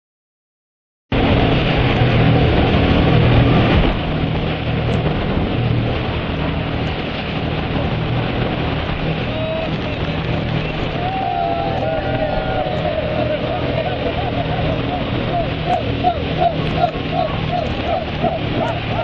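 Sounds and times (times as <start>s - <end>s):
boat motor humming: 1.1s - 19.0s
rushing water and spray: 1.2s - 19.0s.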